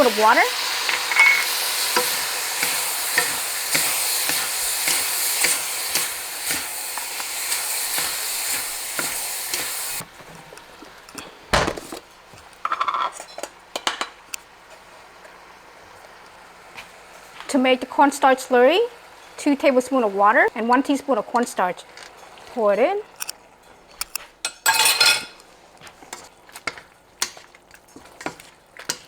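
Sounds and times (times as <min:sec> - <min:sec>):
meat sizzling in a pan: 0:00.0 - 0:11.1
spatula scraping a pan: 0:00.0 - 0:11.4.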